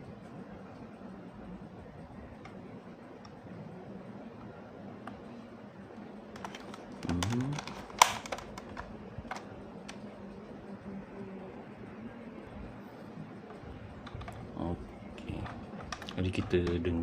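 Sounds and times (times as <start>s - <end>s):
plastic toy clicks and taps: 6.4s - 10.0s.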